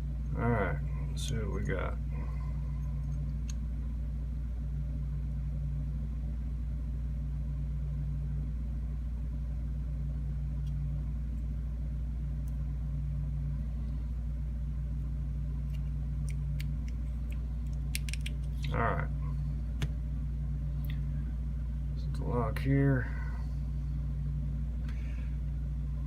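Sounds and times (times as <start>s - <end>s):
low machine hum: 0.0s - 26.0s
small clicks of lock parts: 15.7s - 18.8s.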